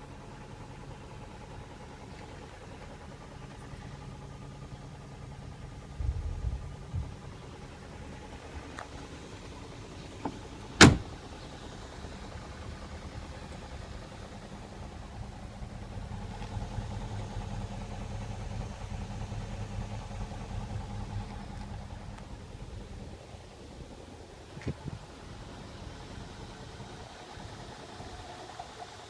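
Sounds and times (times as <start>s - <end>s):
car engine running: 0.0s - 29.0s
loud thump: 10.2s - 11.1s.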